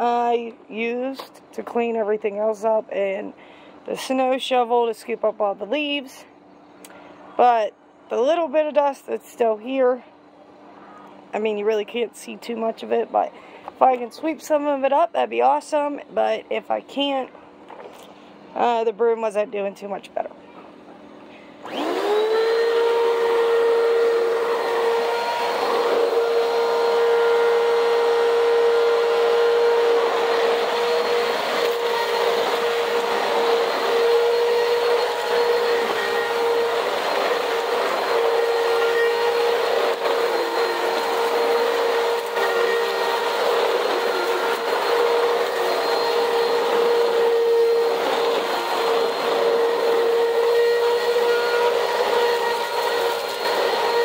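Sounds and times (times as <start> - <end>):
vacuum cleaner motor whine: 21.6 - 54.0.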